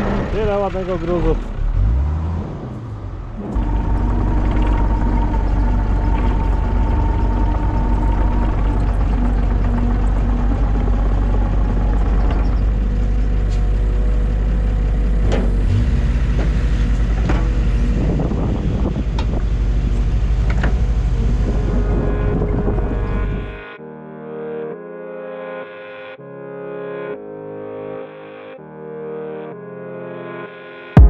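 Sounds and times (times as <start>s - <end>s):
diesel engine running: 0.0s - 23.6s.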